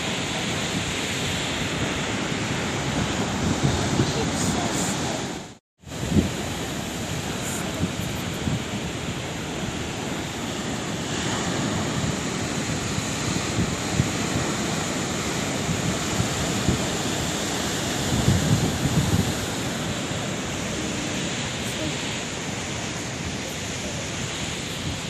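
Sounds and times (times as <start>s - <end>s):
sea waves breaking on shore: 0.0s - 25.0s.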